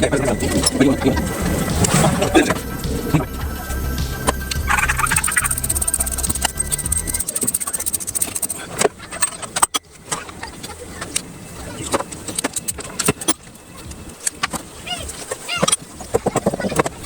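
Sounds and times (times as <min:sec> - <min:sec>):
metallic clicks of hand tools: 0:05.0 - 0:09.8.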